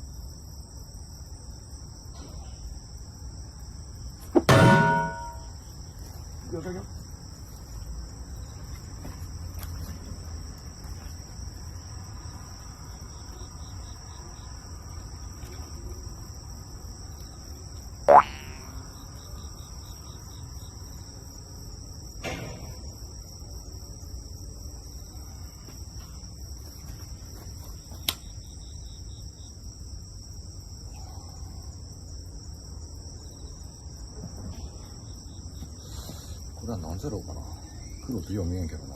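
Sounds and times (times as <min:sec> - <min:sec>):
insects chirring: 0:00.0 - 0:38.9.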